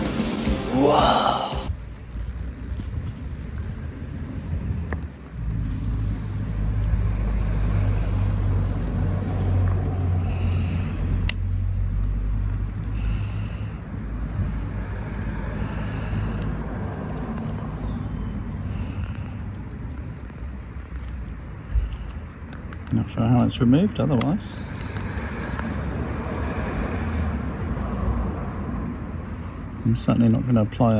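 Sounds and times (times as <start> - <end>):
vehicle engine rumble: 0.0 - 30.9.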